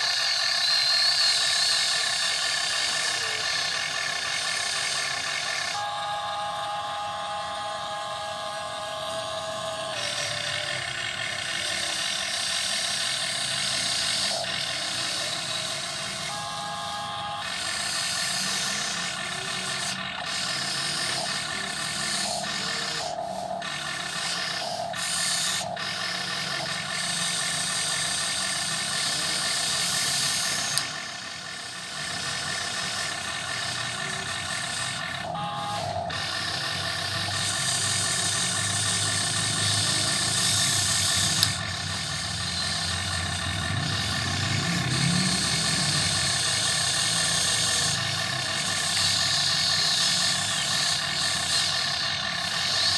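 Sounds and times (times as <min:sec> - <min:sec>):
small electric motors whirring: 0:00.0 - 0:52.9.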